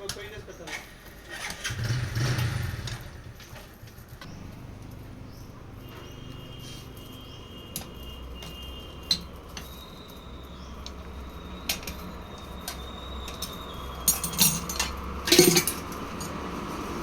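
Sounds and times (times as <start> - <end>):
metal parts clinking and knocking: 6.7 - 16.6.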